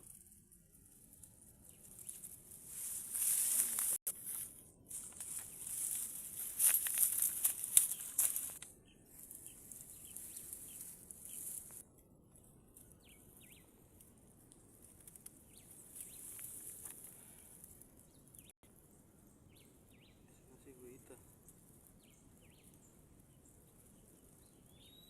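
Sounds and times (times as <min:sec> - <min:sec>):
rustling and crackling: 0:00.0 - 0:18.5
faint bird chirps: 0:07.0 - 0:11.8, 0:15.4 - 0:25.0.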